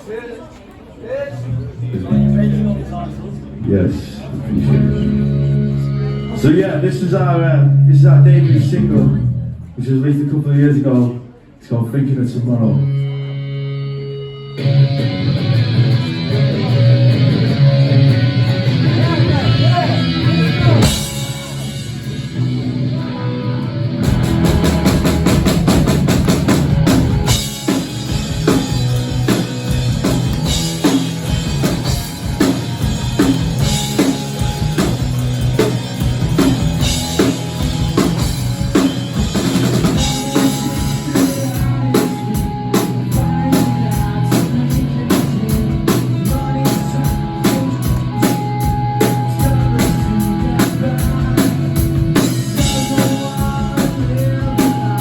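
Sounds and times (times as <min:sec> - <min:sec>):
bass guitar: 0:01.3 - 0:10.0, 0:12.4 - 0:55.0
electric guitar: 0:01.4 - 0:09.8, 0:12.7 - 0:55.0
drum kit beat: 0:15.6 - 0:23.0, 0:23.7 - 0:55.0.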